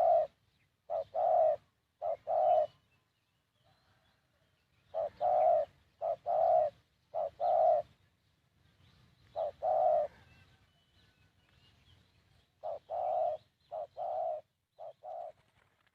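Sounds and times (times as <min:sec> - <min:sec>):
dove cooing: 0:00.0 - 0:02.9, 0:04.9 - 0:08.0, 0:09.3 - 0:10.6, 0:12.5 - 0:15.6
small birds chirping: 0:00.0 - 0:15.8.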